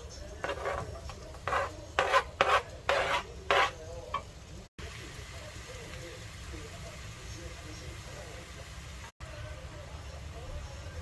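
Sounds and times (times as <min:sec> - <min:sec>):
kitchen utensil scraping: 0:00.0 - 0:04.4.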